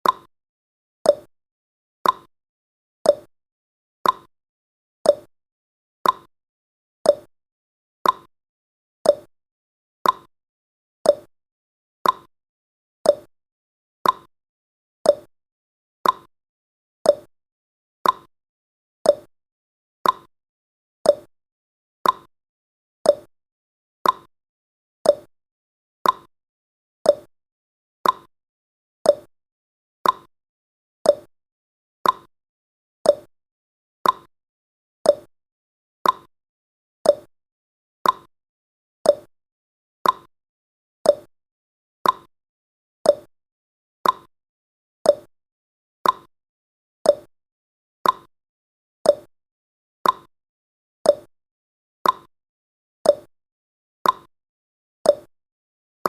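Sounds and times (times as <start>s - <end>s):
clock tick-tock: 0.0s - 0.3s, 1.1s - 1.3s, 2.0s - 2.3s, 3.1s - 3.3s, 4.0s - 4.3s, 5.1s - 5.3s, 6.0s - 6.3s, 7.1s - 7.3s, 8.0s - 8.3s, 9.0s - 9.3s, 10.0s - 10.3s, 11.1s - 11.3s, 12.0s - 12.3s, 13.1s - 13.3s, 14.0s - 14.3s, 15.0s - 15.3s, 16.0s - 16.3s, 17.0s - 17.3s, 18.0s - 18.3s, 19.0s - 19.3s, 20.0s - 20.3s, 21.0s - 21.3s, 22.0s - 22.3s, 23.0s - 23.3s, 24.0s - 24.3s, 25.0s - 25.3s, 26.0s - 26.3s, 27.0s - 27.3s, 28.0s - 28.3s, 29.0s - 29.3s, 30.0s - 30.3s, 31.0s - 31.3s, 32.0s - 32.3s, 33.0s - 33.3s, 34.0s - 34.3s, 35.0s - 35.3s, 36.0s - 36.3s, 37.0s - 37.3s, 38.0s - 38.3s, 39.0s - 39.3s, 40.0s - 40.3s, 41.0s - 41.3s, 42.0s - 42.3s, 43.0s - 43.3s, 44.0s - 44.3s, 45.1s - 45.3s, 46.0s - 46.3s, 47.0s - 47.3s, 48.0s - 48.3s, 49.1s - 49.3s, 50.0s - 50.3s, 51.1s - 51.3s, 52.0s - 52.3s, 53.1s - 53.3s, 54.0s - 54.3s, 55.1s - 55.3s.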